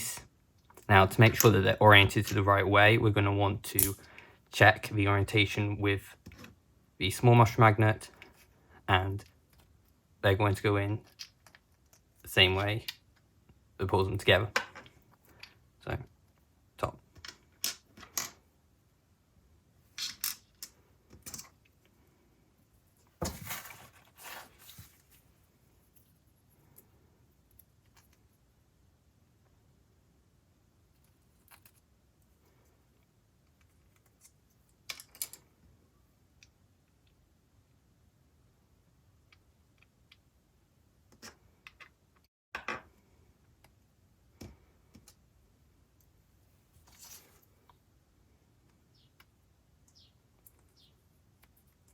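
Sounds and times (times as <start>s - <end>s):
scraping rustle: 23.0s - 26.3s
plastic parts and magnets clicking: 33.5s - 35.5s
plastic parts clicking: 34.8s - 35.4s.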